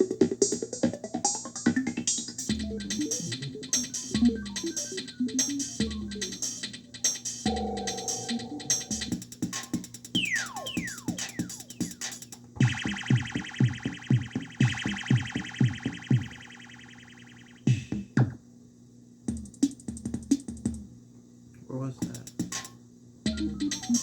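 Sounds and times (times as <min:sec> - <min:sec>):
electronic music: 0:01.4 - 0:17.9, 0:23.3 - 0:24.0
zapping pitch sweeps: 0:07.4 - 0:09.2, 0:10.2 - 0:11.9
buzzing synth layer: 0:07.4 - 0:09.3.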